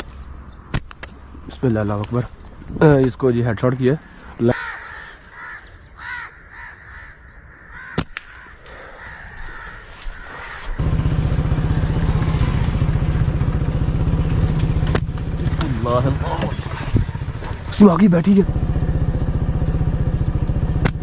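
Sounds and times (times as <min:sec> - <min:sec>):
crows cawing: 0:04.0 - 0:11.2
motorcycle engine running: 0:10.8 - 0:21.0
sharp click: 0:14.6 - 0:15.7, 0:20.8 - 0:21.0.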